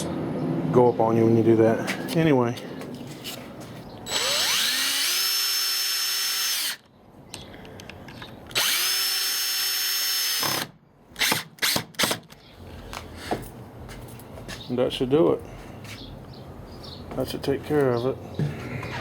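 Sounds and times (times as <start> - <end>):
power drill driving screws: 4.1 - 6.8, 8.5 - 12.2.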